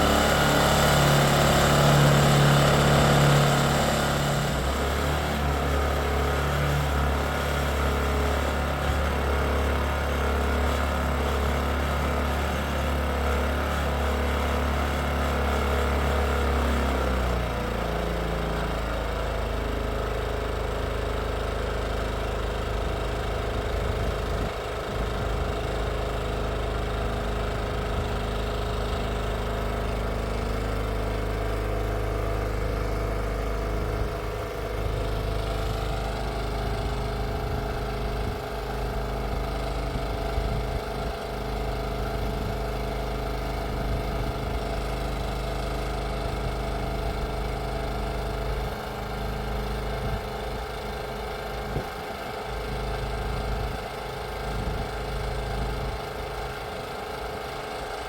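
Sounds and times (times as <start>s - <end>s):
engine humming: 0.0s - 12.4s.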